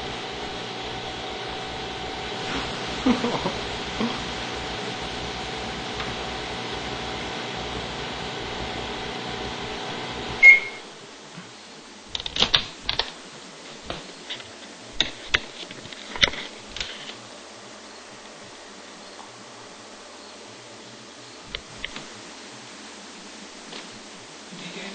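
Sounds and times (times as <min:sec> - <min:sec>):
microwave oven humming: 0:00.0 - 0:11.1
short high beep: 0:10.4 - 0:10.9
sharp clicks and knocks: 0:12.1 - 0:13.2, 0:13.9 - 0:17.2.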